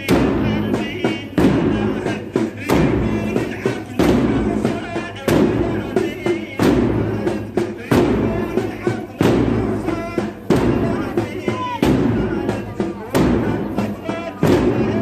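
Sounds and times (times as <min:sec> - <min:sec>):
chanting voices: 0:00.0 - 0:15.0.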